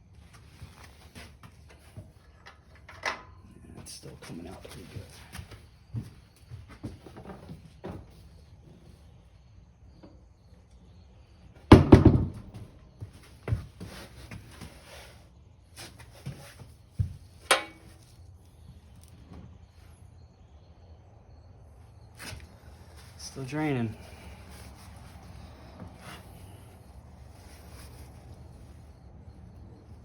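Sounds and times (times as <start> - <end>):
ringing metal clank: 17.5 - 18.0.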